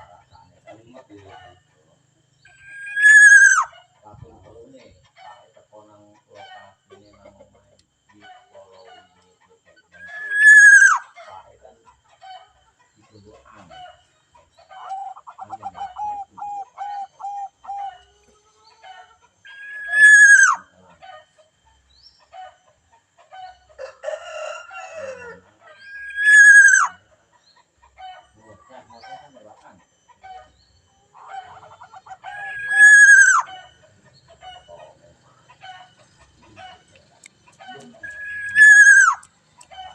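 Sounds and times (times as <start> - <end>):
bird chirping pulses: 2.2 - 3.8, 9.9 - 11.2, 13.2 - 20.8, 25.7 - 39.9
bird squawk: 2.4 - 4.0, 9.9 - 11.4, 13.2 - 21.3, 22.1 - 39.9
bird call with falling end: 37.5 - 39.9.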